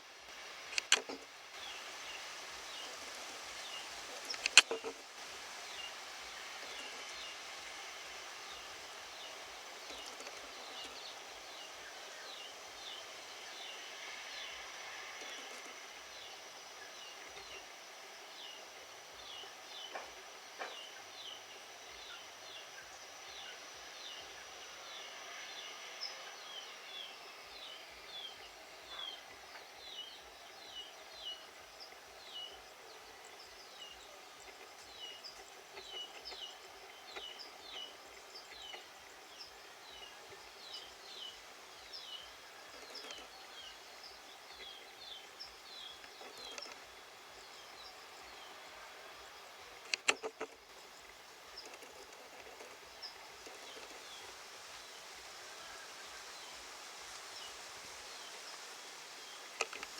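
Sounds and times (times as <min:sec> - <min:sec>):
faint outdoor hiss: 0:00.0 - 0:59.9
small birds chirping: 0:00.6 - 0:59.9
sharp clicks: 0:00.7 - 0:01.2, 0:04.3 - 0:05.0, 0:49.8 - 0:50.6.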